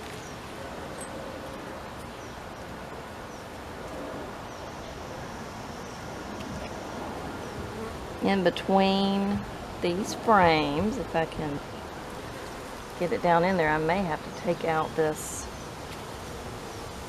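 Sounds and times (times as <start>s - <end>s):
outdoor background hiss: 0.0s - 17.0s
honeybees buzzing: 5.4s - 17.0s.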